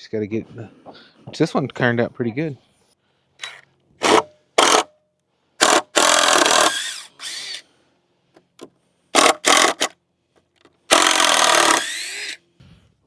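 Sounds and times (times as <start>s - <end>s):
power drill running: 3.4s - 4.9s, 5.6s - 7.6s, 9.2s - 9.9s, 10.9s - 12.4s.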